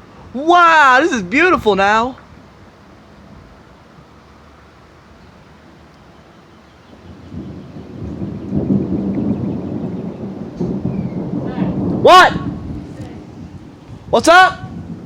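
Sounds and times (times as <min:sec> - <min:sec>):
thunder rumbling: 0:06.9 - 0:15.0.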